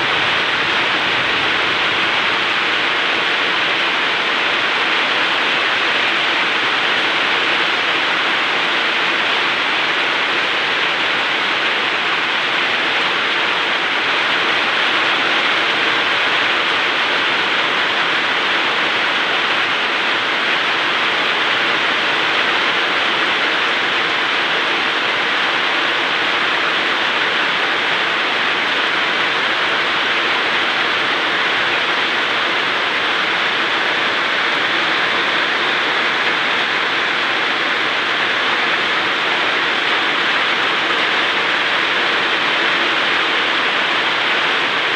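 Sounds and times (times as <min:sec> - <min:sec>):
steady rain falling: 0:00.0 - 0:44.9.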